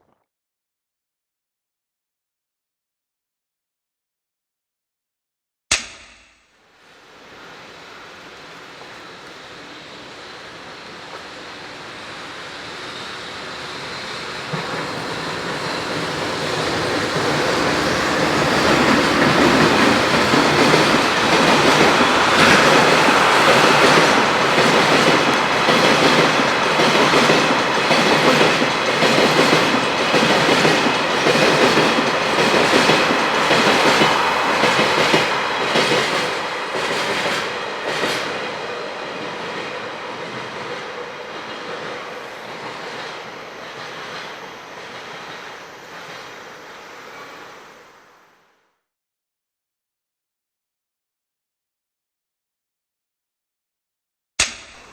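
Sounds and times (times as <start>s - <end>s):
train wheels clacking over rail joints: 14.4s - 46.4s.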